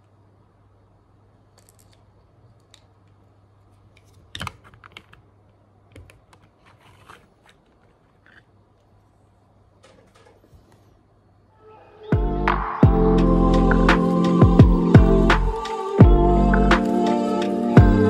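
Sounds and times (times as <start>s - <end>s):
faint steady hum: 0.0s - 18.0s
small objects clicking and tapping: 1.5s - 3.2s.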